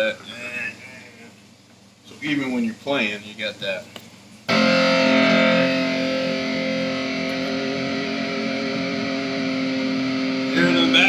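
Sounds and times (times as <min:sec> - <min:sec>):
amplifier ground hum: 0:04.5 - 0:11.0
electric guitar chord ringing: 0:04.5 - 0:11.0.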